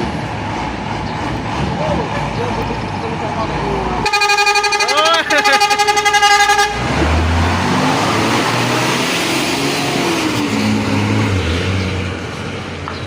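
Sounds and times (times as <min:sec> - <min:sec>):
diesel engine accelerating: 0:00.0 - 0:13.0
road noise: 0:00.0 - 0:13.0
bus multi-note horn: 0:04.0 - 0:06.9.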